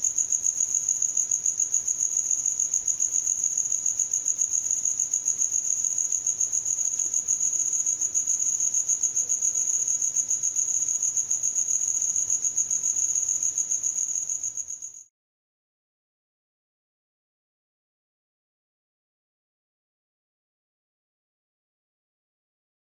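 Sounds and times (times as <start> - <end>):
cricket chirping: 0.0 - 15.1.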